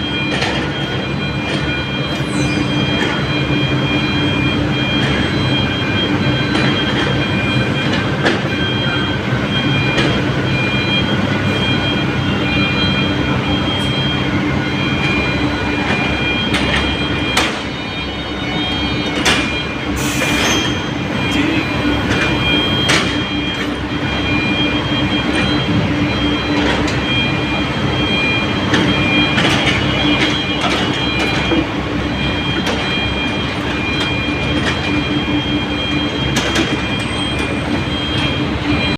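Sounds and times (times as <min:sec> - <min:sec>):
excavator engine drone: 0:00.0 - 0:38.9
metallic clanks of steel tracks: 0:12.8 - 0:24.1, 0:28.4 - 0:35.1, 0:36.0 - 0:38.9.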